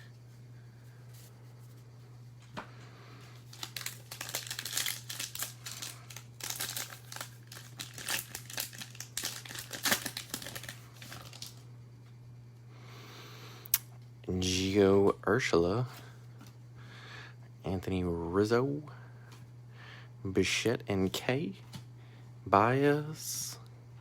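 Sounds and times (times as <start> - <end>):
steady low hum: 0.0 - 24.0
card pack wrapper crinkling: 3.4 - 11.6.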